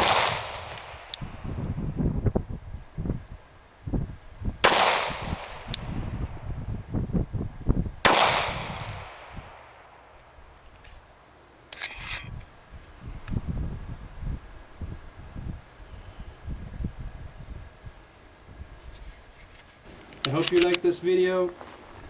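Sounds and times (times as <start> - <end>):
pistol shots echoing: 0.0 - 1.2, 4.6 - 5.7, 8.0 - 9.3.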